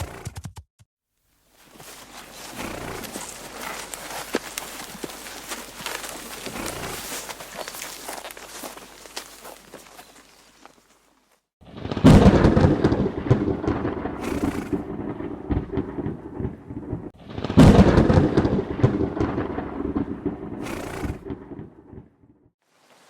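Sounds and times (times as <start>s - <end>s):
rolling thunderclaps: 11.6s - 22.3s.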